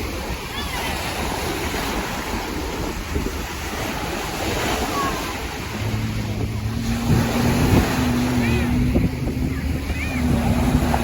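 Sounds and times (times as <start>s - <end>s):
surf: 0.0s - 11.0s
wind buffeting microphone: 0.0s - 11.0s
low engine hum: 2.4s - 11.0s.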